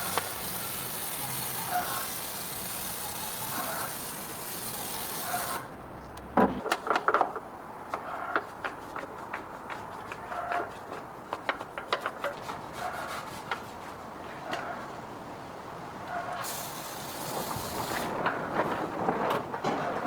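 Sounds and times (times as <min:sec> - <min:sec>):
steady hiss: 0:00.0 - 0:05.7, 0:16.4 - 0:18.5.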